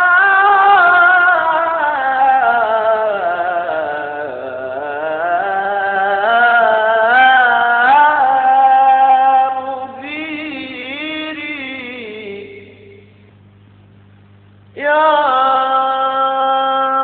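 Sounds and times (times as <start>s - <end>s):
man singing a melismatic chant: 0.0s - 13.1s, 14.8s - 17.0s.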